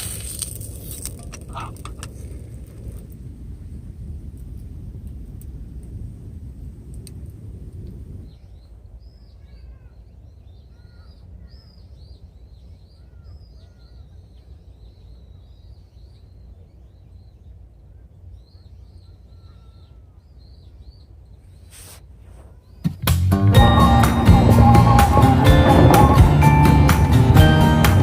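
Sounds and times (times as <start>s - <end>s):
steady low rumble: 0.0s - 28.0s
birds chirping: 8.1s - 28.0s.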